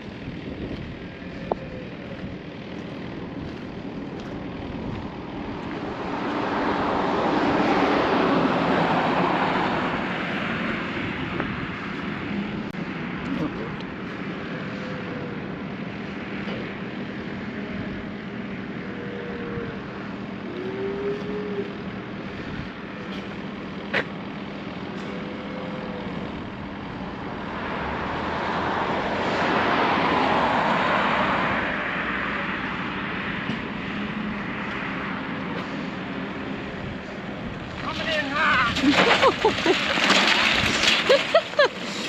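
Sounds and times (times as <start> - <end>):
low outdoor hum: 0.0 - 42.0
vehicle passing by: 3.5 - 15.4, 25.0 - 42.0.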